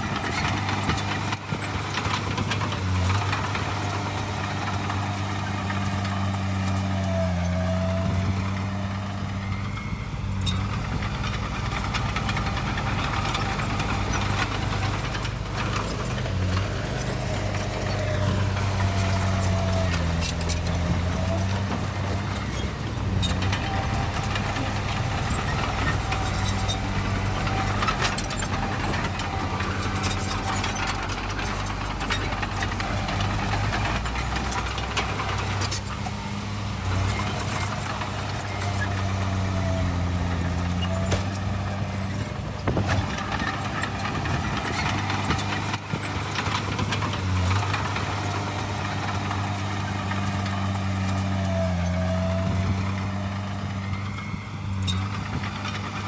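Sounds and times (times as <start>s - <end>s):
heavy machinery diesel engine: 0.0s - 56.0s
short knocks: 41.0s - 45.6s.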